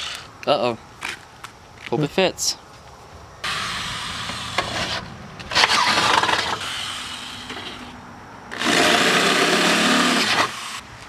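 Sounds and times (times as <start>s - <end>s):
electric drill boring through metal: 3.4s - 7.9s, 8.5s - 10.8s.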